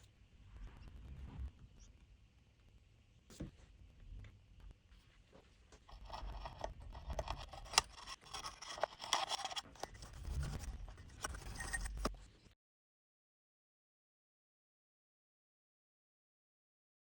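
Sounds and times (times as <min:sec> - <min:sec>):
scraping and scratching: 0:05.8 - 0:12.5.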